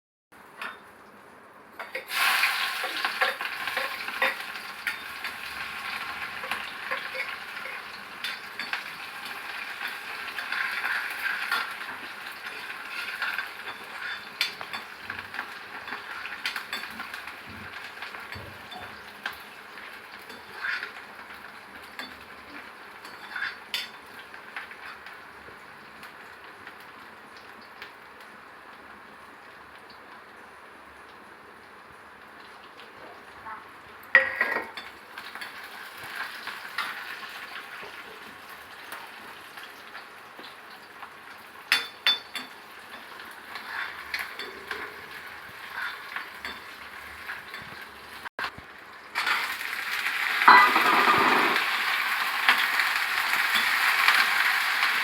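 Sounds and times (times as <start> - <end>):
spoon scraping a pan: 1.8 - 19.4, 20.2 - 21.3, 22.0 - 24.0, 41.7 - 48.0, 50.4 - 54.8
vegetables sizzling in hot oil: 1.8 - 32.8, 33.9 - 55.0.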